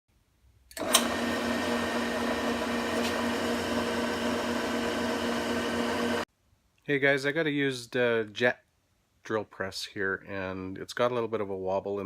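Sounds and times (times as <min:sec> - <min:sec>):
drill press motor hum: 0:00.7 - 0:06.2.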